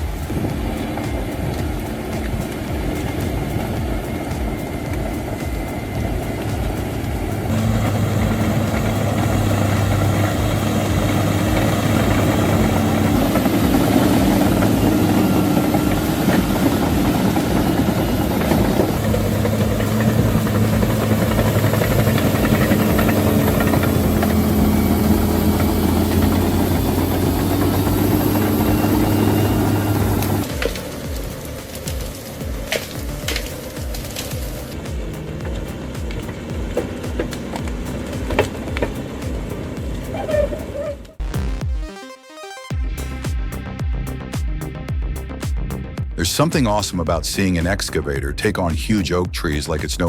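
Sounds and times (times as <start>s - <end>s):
heavy machinery engine humming: 0.0s - 41.4s, 42.8s - 50.0s.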